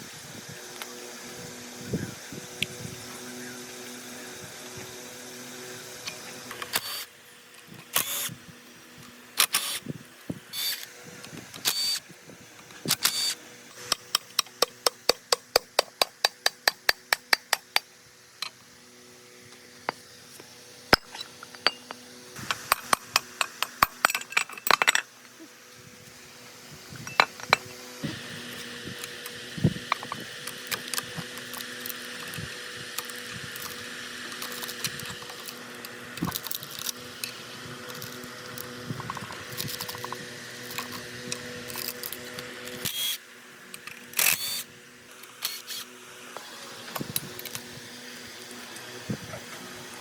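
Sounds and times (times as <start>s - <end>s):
electric power tool motor running: 0.0s - 50.0s
metal parts clicking: 22.5s - 25.1s, 33.0s - 44.6s.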